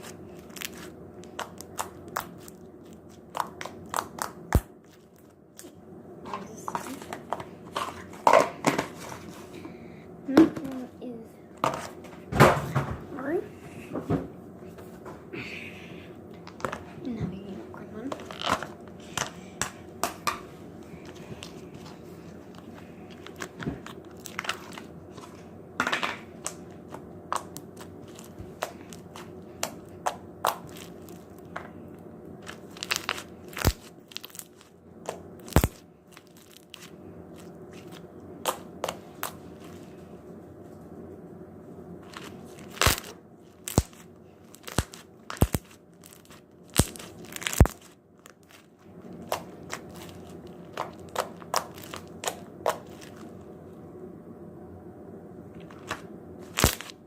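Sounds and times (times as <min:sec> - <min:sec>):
slime clicking and popping: 0:03.3 - 0:04.7.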